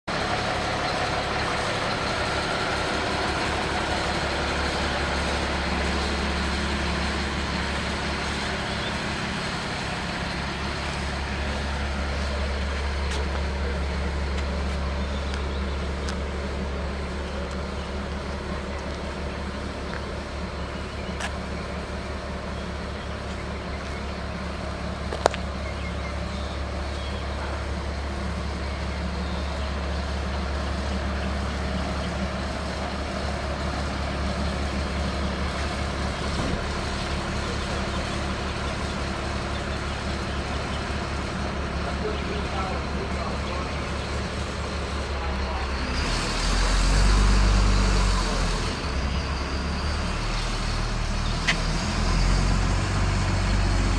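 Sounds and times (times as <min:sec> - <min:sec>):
truck engine idling: 0:00.0 - 0:53.9.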